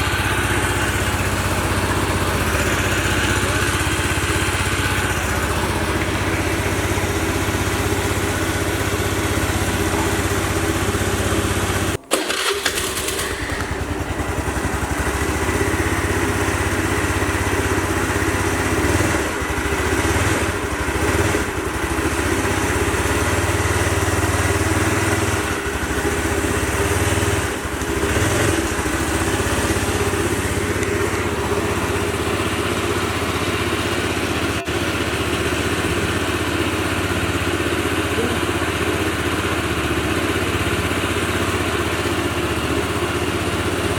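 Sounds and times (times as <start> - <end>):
small motorbike engine idling: 0.0 - 43.9.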